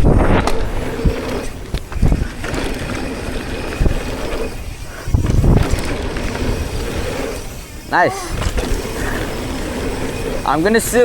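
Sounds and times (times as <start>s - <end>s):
tyres rumbling over dirt: 0.0s - 11.0s
wind buffeting microphone: 0.0s - 11.0s
bike landing thumps: 8.2s - 10.2s.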